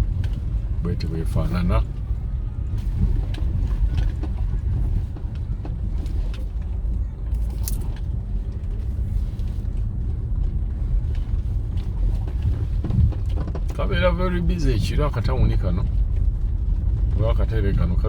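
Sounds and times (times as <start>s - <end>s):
vehicle rumbling on road: 0.0s - 18.0s.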